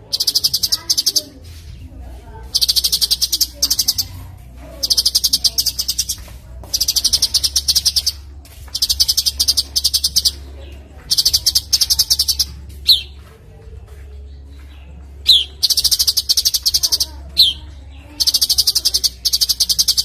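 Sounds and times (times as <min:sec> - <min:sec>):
songbird high rapid trill: 0:00.0 - 0:01.3, 0:02.5 - 0:04.1, 0:04.8 - 0:10.4, 0:11.1 - 0:13.1, 0:15.3 - 0:17.6, 0:18.2 - 0:20.0.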